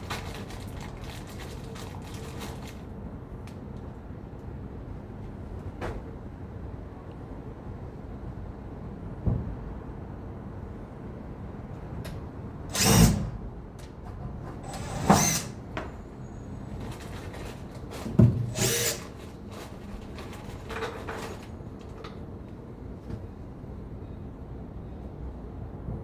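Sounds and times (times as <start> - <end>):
construction site noise: 0.0 - 6.7, 9.1 - 26.0
power drill bursts: 12.7 - 13.4, 14.6 - 15.8, 18.4 - 20.7.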